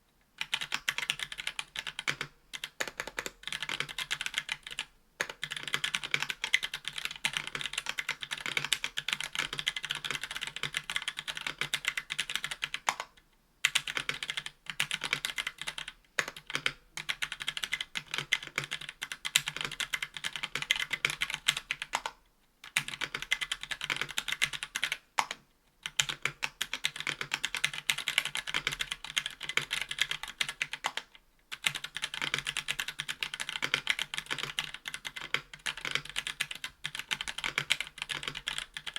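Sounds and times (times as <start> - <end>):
mechanical keyboard typing: 0.4 - 38.9.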